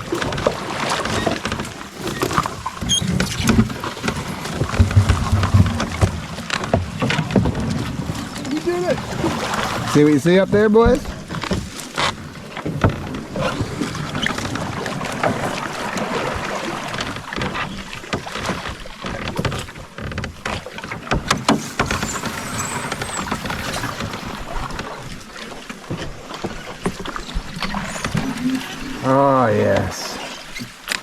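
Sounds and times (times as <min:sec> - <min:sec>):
water splashing around paddles: 0:00.0 - 0:31.0
sharp knocks: 0:03.1 - 0:07.7.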